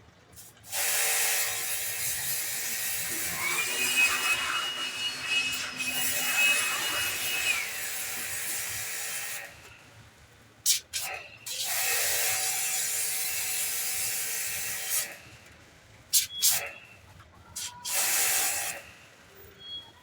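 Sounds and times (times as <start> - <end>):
pressure washer jet spraying: 10.7 - 12.5, 16.1 - 16.7, 17.6 - 18.8.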